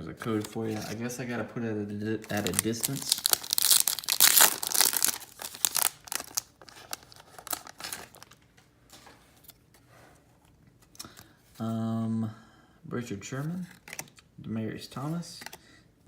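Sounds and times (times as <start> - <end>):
plastic wrapper tearing and crinkling: 2.3 - 8.4.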